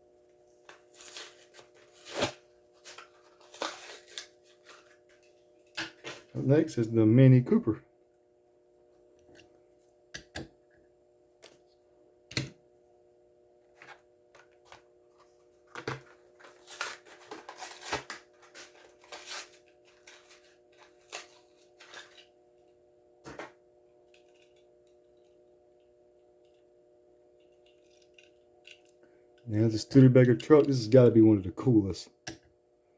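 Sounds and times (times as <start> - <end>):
faint steady hum: 0.0 - 32.9
plastic packaging crinkling: 0.8 - 5.2, 15.8 - 22.3.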